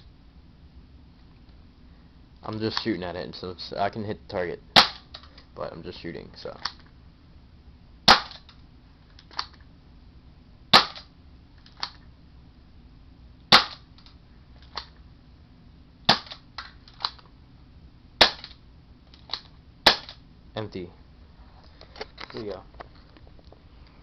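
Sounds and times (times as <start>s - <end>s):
airsoft revolver shots: 4.8s - 5.2s, 8.1s - 8.5s, 10.7s - 11.1s, 13.5s - 13.9s, 16.1s - 17.2s, 18.2s - 18.6s, 19.3s - 20.2s.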